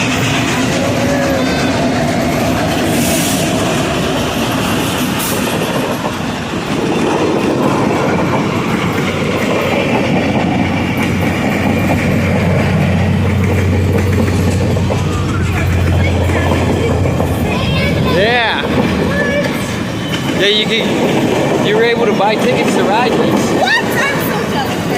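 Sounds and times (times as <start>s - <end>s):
train wheels clacking over rail joints: 0.0s - 24.9s.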